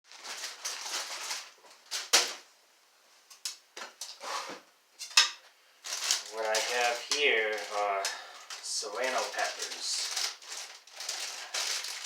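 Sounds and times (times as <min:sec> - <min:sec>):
handling rustles: 0:05.8 - 0:12.0.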